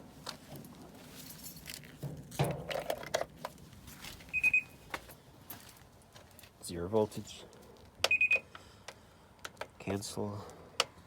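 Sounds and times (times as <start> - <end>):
short electronic beep: 4.3 - 4.8, 8.1 - 8.4.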